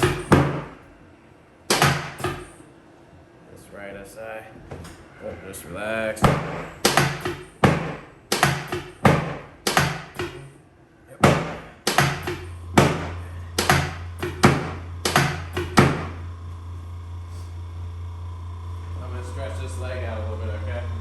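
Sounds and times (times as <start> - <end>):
steady low hum: 0.0 - 21.0
drop table sharp thunks: 1.7 - 2.6, 6.2 - 10.5, 11.2 - 16.2.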